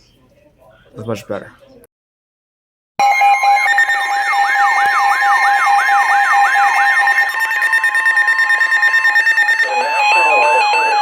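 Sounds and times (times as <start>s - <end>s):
two-tone alert signal: 3.0s - 11.0s
siren whoop: 3.6s - 9.0s.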